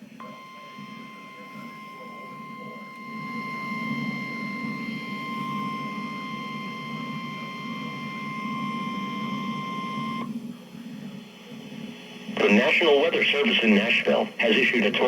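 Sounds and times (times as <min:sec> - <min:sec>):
steady alarm beep: 0:00.2 - 0:10.3.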